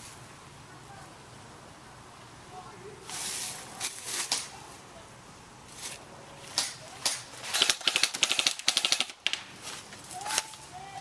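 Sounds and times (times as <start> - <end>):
airsoft gun full-auto fire: 7.5 - 9.4.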